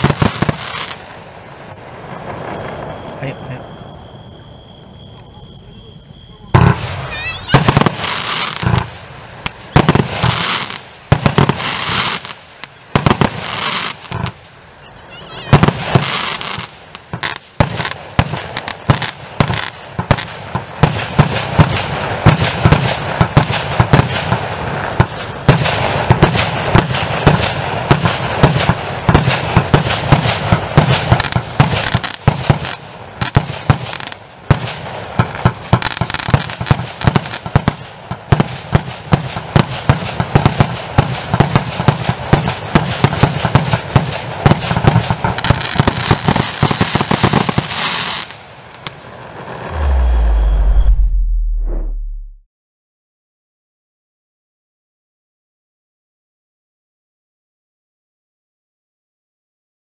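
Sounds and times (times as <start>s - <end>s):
fireworks launches and bangs: 0.0s - 3.6s, 6.4s - 14.5s, 15.2s - 50.8s.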